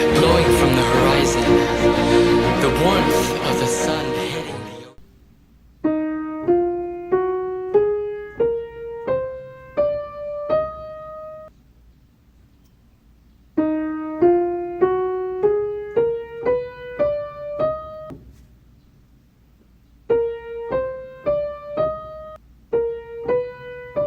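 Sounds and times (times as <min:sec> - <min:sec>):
piano rising single notes: 0:00.0 - 0:05.0.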